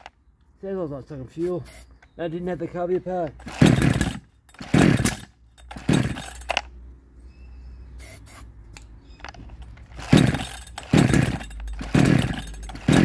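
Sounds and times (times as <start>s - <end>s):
chainsaw recoil starter pulls: 3.2s - 6.7s, 9.2s - 13.0s.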